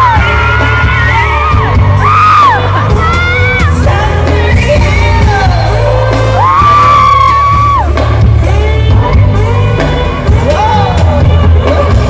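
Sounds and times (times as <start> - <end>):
audience yelling along: 0.0 - 3.9
heavy bass: 0.0 - 12.0
live pop concert music: 0.0 - 12.0
person singing: 0.0 - 12.0.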